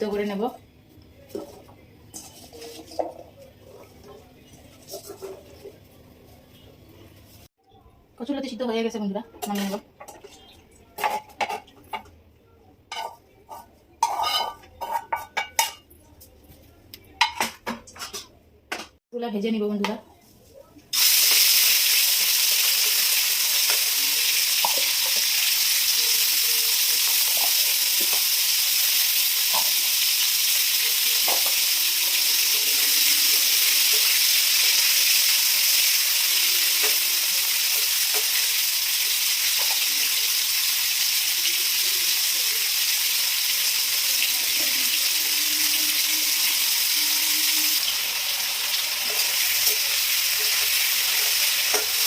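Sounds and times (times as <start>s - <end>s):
food sizzling in hot oil: 20.9s - 52.0s.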